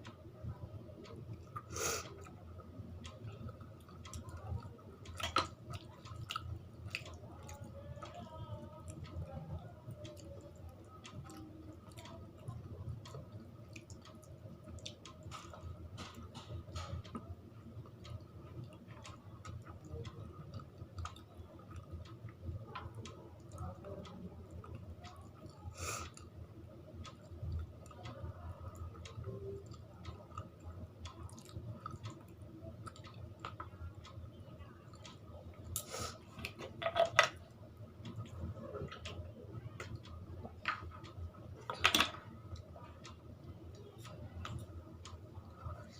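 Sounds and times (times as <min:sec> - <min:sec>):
person chewing food: 0:05.0 - 0:07.7, 0:18.7 - 0:22.1, 0:29.0 - 0:33.7.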